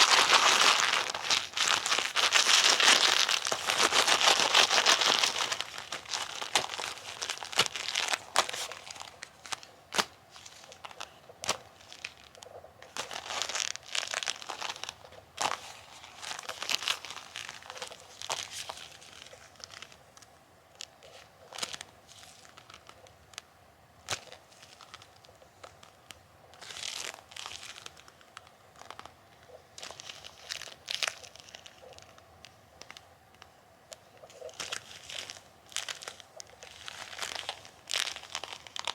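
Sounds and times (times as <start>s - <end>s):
rubber gloves rubbing together: 0.0s - 20.0s.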